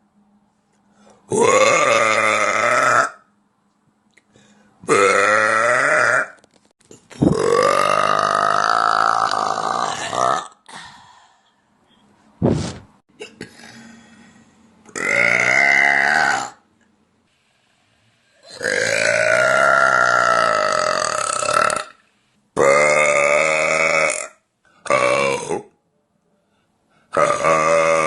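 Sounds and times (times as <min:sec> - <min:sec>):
woman burping loudly: 0:01.3 - 0:03.2, 0:04.9 - 0:06.4, 0:07.2 - 0:10.7, 0:14.9 - 0:16.6, 0:18.4 - 0:22.0, 0:22.6 - 0:25.7, 0:27.1 - 0:28.0
short low thump: 0:12.4 - 0:13.0.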